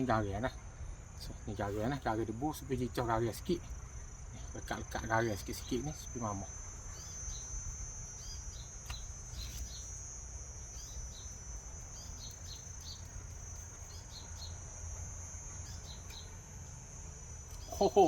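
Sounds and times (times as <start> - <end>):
high-pitched insect drone: 0.0 - 18.0
bird chirps: 5.5 - 14.7, 15.5 - 16.4, 17.4 - 18.0.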